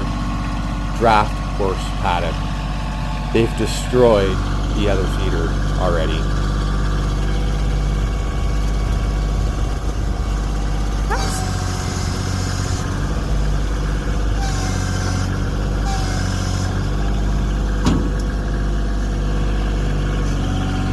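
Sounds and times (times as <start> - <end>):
tractor engine running: 0.0 - 20.9
high squeaks: 10.9 - 17.3.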